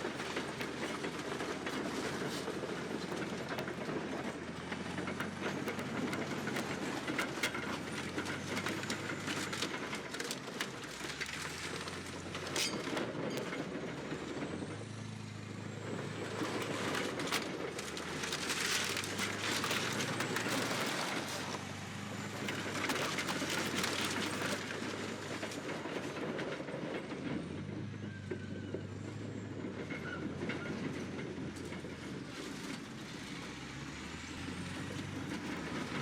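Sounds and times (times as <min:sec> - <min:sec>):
metallic clanks and crunches: 0:00.0 - 0:14.6, 0:16.2 - 0:25.8
bulldozer diesel engine: 0:00.0 - 0:36.0.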